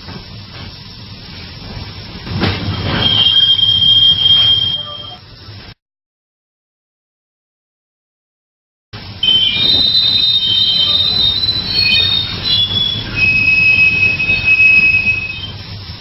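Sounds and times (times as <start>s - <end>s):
railway brake squeal: 2.5s - 5.2s, 9.2s - 15.7s.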